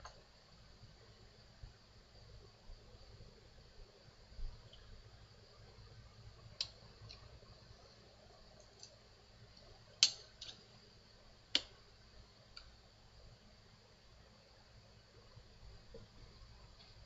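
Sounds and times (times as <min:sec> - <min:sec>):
faint high-pitched hum: 0:00.0 - 0:17.0
sharp clicks: 0:10.0 - 0:10.6, 0:11.5 - 0:11.8.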